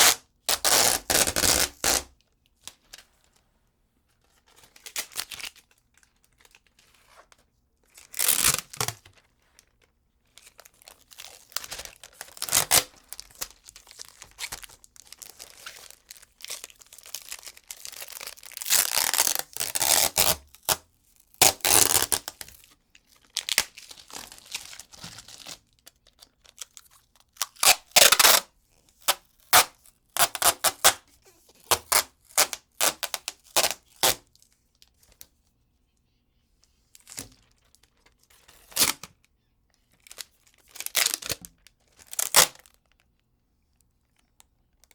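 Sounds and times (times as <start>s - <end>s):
adhesive tape ripping: 0.0s - 2.1s, 8.2s - 8.9s, 12.4s - 12.9s, 18.6s - 20.8s, 21.4s - 22.4s, 27.4s - 28.5s, 29.1s - 31.0s, 42.2s - 42.6s.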